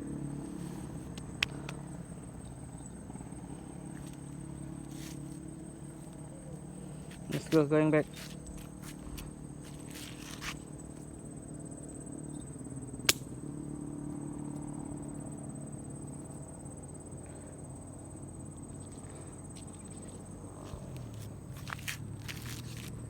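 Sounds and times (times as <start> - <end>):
crickets trilling: 0.0 - 23.0
sharp click: 13.1 - 13.3.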